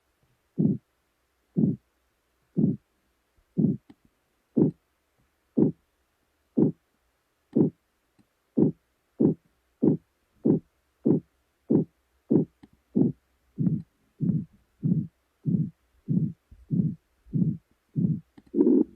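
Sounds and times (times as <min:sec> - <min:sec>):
low heartbeat-like pulse: 0:00.6 - 0:00.8, 0:01.6 - 0:01.8, 0:02.6 - 0:02.8, 0:03.6 - 0:03.9, 0:04.6 - 0:04.8, 0:05.6 - 0:05.8, 0:06.6 - 0:06.8, 0:07.6 - 0:07.8, 0:08.6 - 0:18.9.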